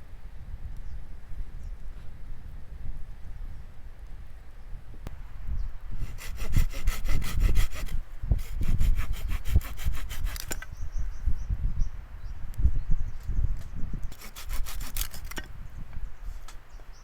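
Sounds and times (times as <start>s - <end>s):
hand saw cutting firewood: 6.0s - 10.7s, 14.1s - 15.5s.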